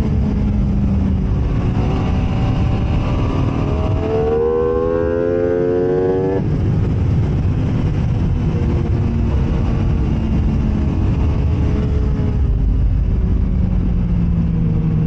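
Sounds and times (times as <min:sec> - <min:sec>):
motorcycle engine accelerating: 0:00.0 - 0:15.0
wind and road noise: 0:00.0 - 0:15.0.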